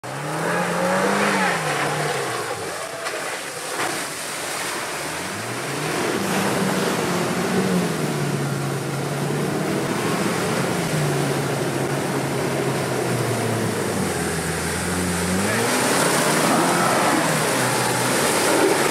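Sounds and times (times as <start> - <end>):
engine revving under load: 0.0 - 3.1, 13.2 - 18.9
constant rushing noise: 0.1 - 18.9.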